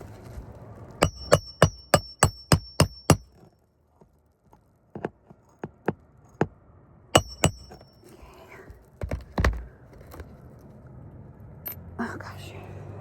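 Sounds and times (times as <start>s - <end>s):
hammer striking metal: 1.0s - 3.2s, 7.2s - 8.0s.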